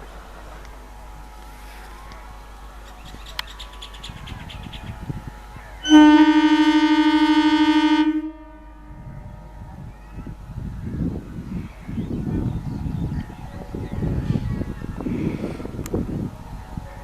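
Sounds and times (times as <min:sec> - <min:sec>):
low rumble of train: 0:00.0 - 0:17.0
train horn blast: 0:05.0 - 0:10.5.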